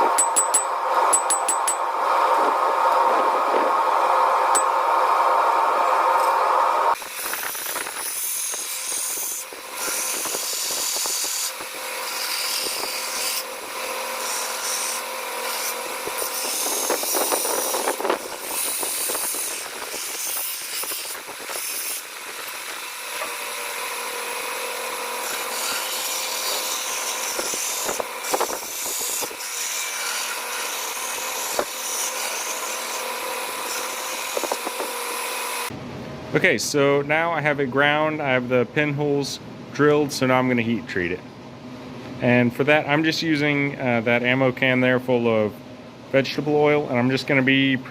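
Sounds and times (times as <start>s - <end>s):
power tool grinding steel: 0.0s - 35.7s.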